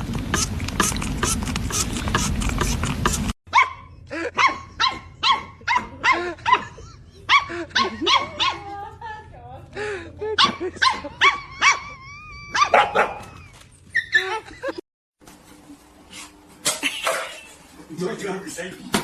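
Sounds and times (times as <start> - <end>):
dog barking: 3.5 - 8.7, 10.4 - 11.9, 12.5 - 13.3.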